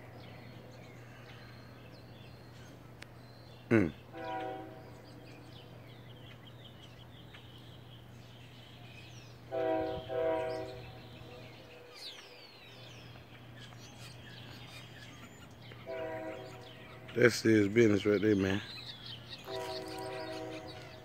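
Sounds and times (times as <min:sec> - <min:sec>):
small birds chirping: 0:00.0 - 0:21.0
short honks: 0:03.8 - 0:04.8, 0:19.5 - 0:20.8.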